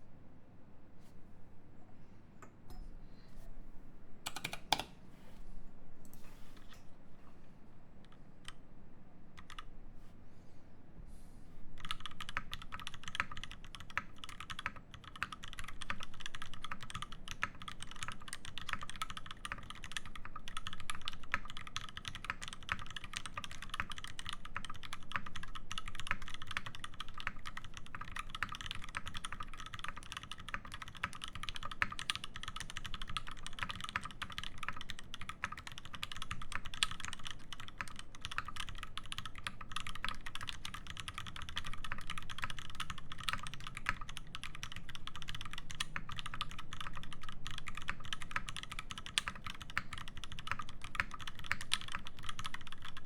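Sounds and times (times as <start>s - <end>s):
mechanical keyboard typing: 4.2s - 4.9s, 9.4s - 9.7s, 11.8s - 53.0s.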